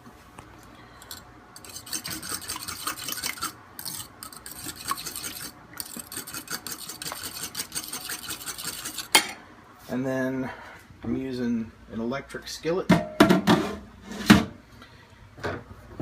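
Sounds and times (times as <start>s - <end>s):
utensil beating eggs in a bowl: 1.0s - 9.2s.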